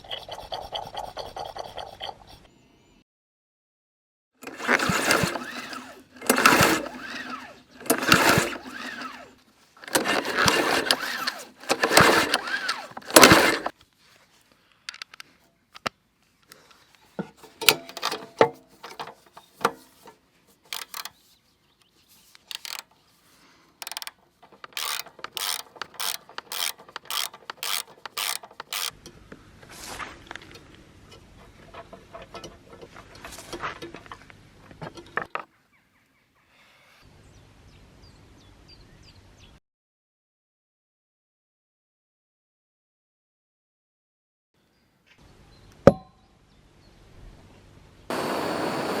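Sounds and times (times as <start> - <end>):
sharp mechanical clicks: 4.4 - 13.7, 20.7 - 21.2, 22.3 - 22.9, 23.8 - 29.0
starter cord rasping whirr: 4.4 - 13.7, 23.8 - 29.0, 48.1 - 49.0.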